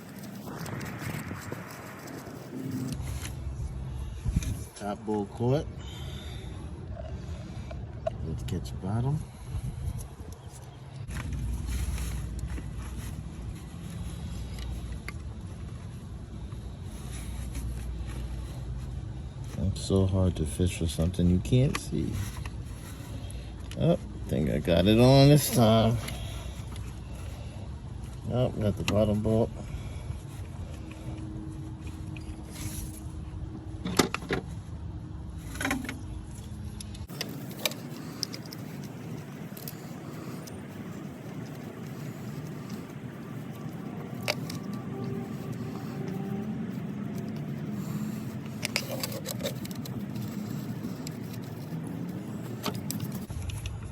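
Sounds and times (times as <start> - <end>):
low rumble: 0.0 - 4.8
steady background hum: 0.0 - 53.9.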